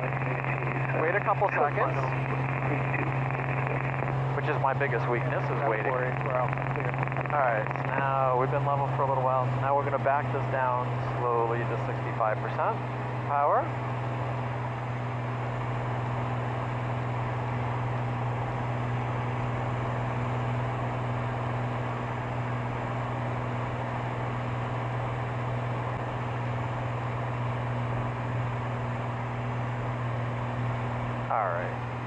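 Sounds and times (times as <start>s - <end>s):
aircraft engine and propeller droning: 0.0s - 32.0s.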